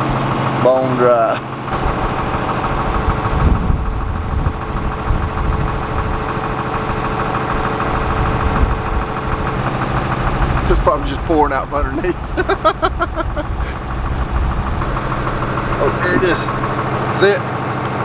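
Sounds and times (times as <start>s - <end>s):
tractor engine idling: 0.0s - 18.0s.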